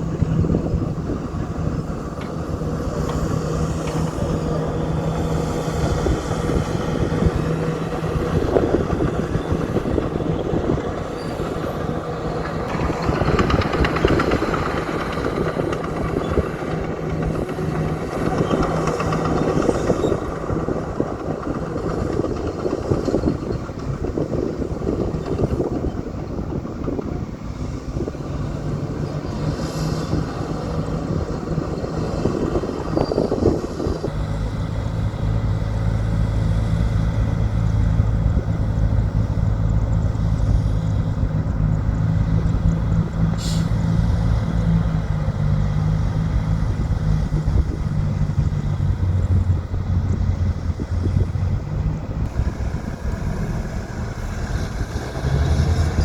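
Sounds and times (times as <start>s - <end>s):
bulldozer diesel engine: 0.0s - 56.0s
steel tracks clanking: 0.0s - 56.0s.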